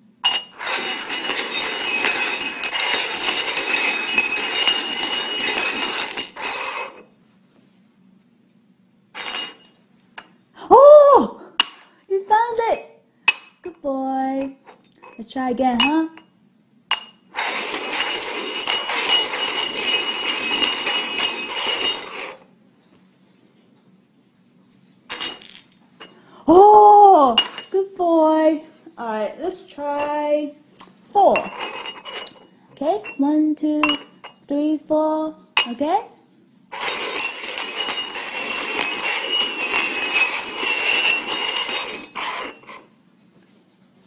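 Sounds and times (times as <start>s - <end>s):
cups clinking: 0.2s - 7.0s, 9.2s - 10.4s, 11.6s - 12.0s, 16.9s - 22.4s, 25.1s - 26.3s, 27.4s - 27.8s, 31.4s - 34.4s, 36.7s - 42.9s
cups scraping on hard surface: 0.2s - 7.1s, 9.2s - 10.3s, 17.3s - 22.5s, 31.3s - 34.4s, 36.7s - 43.9s.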